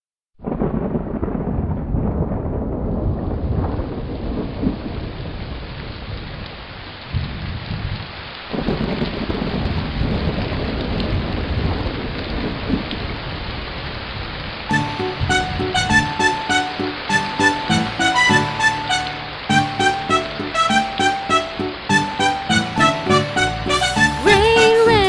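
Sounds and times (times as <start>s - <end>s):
thunder rumbling: 0.4s - 6.4s, 7.1s - 14.0s
heavy rain falling: 0.4s - 25.0s.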